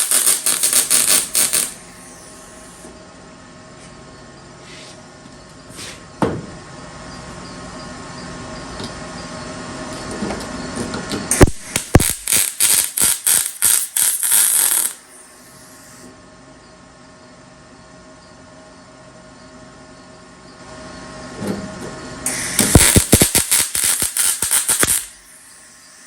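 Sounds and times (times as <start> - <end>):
welding arc bursts: 0.0 - 2.9, 11.3 - 16.0, 22.2 - 26.0.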